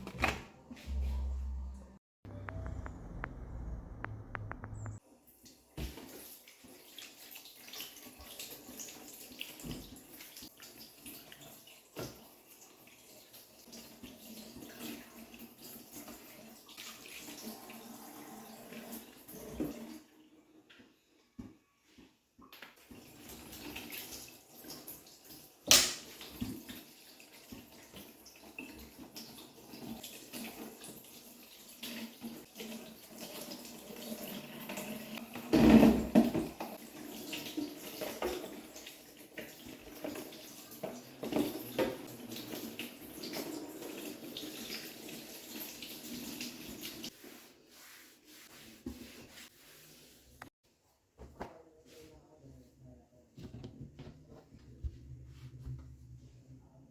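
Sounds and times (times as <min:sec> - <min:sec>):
water running from a tap: 0:05.3 - 0:20.1, 0:22.8 - 0:48.4.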